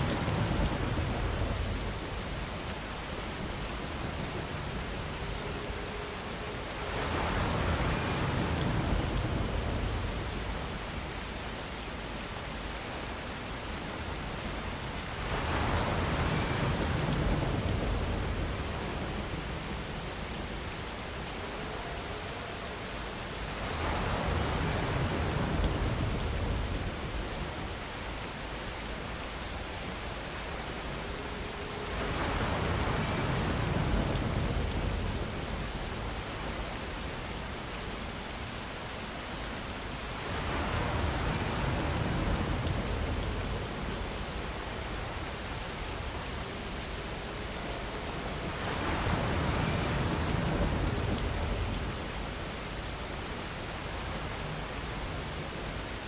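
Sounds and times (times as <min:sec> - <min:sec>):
rain hiss: 0:00.0 - 0:56.0.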